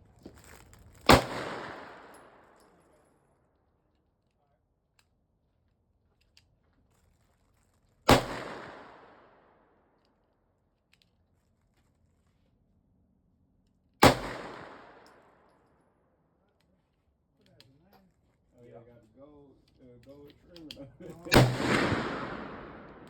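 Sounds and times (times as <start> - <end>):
handgun shots with echo: 1.0 - 2.6, 8.1 - 9.3, 14.0 - 15.4, 21.2 - 23.0.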